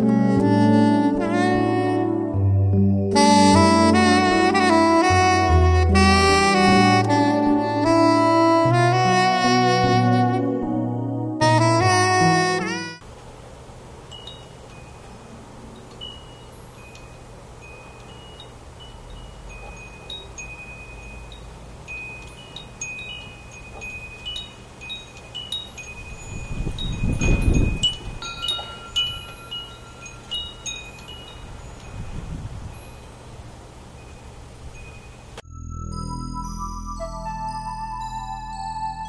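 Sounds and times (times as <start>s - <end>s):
wind chimes ringing: 14.0s - 39.0s.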